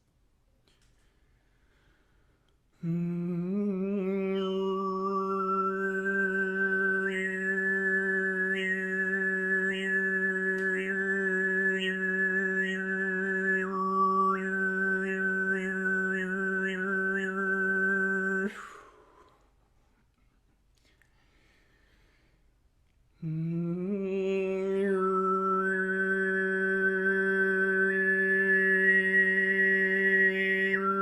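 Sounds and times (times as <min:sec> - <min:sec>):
man throat singing: 0:02.8 - 0:19.2, 0:23.2 - 0:31.0.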